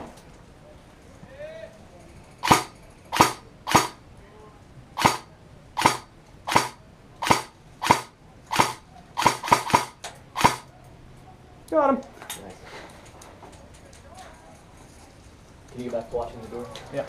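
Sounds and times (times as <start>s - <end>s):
airsoft gun shots: 2.4s - 4.0s, 5.0s - 10.7s.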